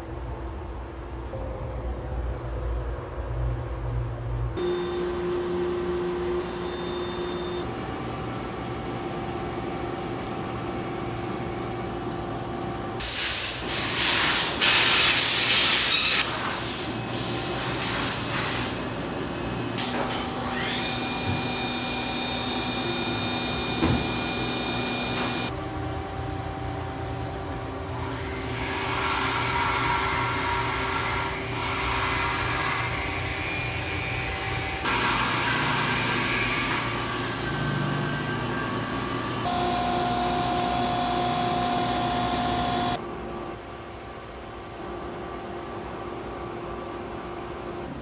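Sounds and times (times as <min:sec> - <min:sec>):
machine whine: 0:04.6 - 0:13.1, 0:14.9 - 0:43.0
loud machine hiss: 0:04.6 - 0:25.5, 0:39.4 - 0:43.0.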